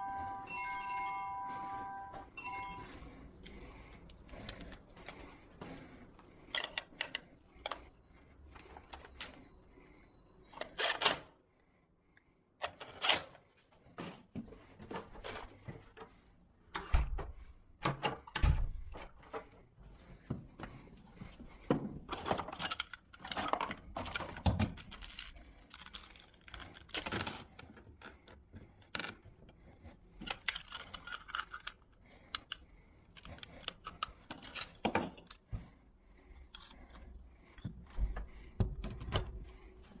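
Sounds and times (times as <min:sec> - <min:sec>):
metal lock parts clinking: 0:22.1 - 0:27.7, 0:30.3 - 0:35.4.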